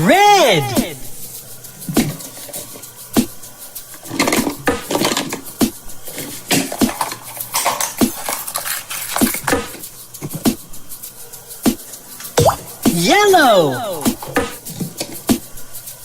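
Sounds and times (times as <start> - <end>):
plastic toys clicking and tapping: 3.9 - 10.6.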